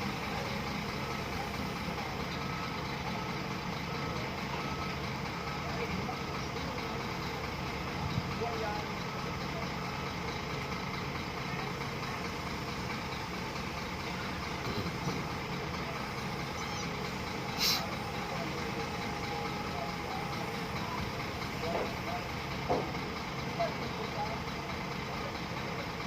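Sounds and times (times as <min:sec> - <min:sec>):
diesel engine idling: 0:00.0 - 0:26.0
air hiss: 0:17.5 - 0:17.9.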